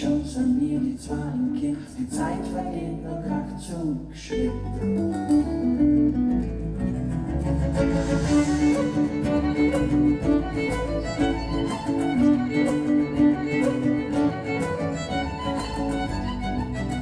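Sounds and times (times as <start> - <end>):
bass: 0.0 - 17.0
guitar: 0.0 - 17.0
light percussion: 6.5 - 17.0
violin melody: 7.2 - 17.0.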